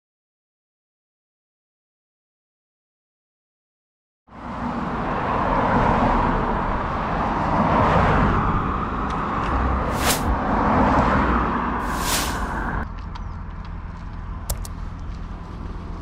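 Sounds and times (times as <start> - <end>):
moving car road and engine noise: 4.3 - 16.0
brief hiss: 11.8 - 12.6.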